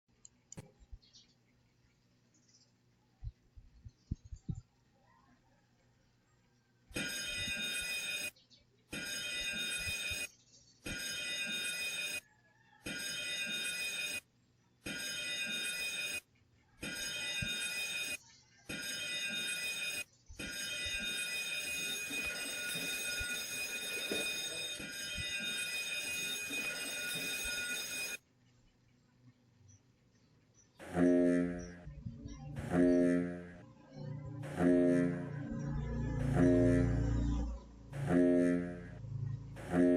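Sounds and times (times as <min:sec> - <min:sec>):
ship's alarm bell ringing: 0:18.8 - 0:28.2.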